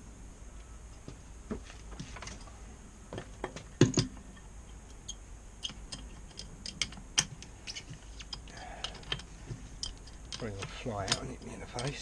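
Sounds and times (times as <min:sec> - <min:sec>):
hand tools clicking on metal: 0:04.7 - 0:12.0.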